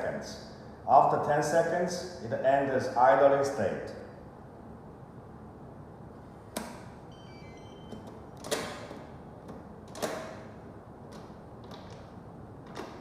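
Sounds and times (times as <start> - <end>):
lock lever and latch clunking: 6.6 - 12.1.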